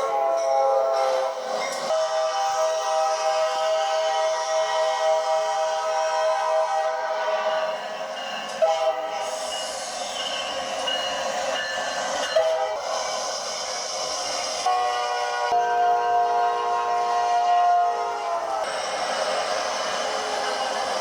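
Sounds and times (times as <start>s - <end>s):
train horn blasts: 0.0s - 7.8s, 8.6s - 9.4s, 12.3s - 13.0s, 14.7s - 18.7s
hiss of moving train: 0.0s - 21.0s.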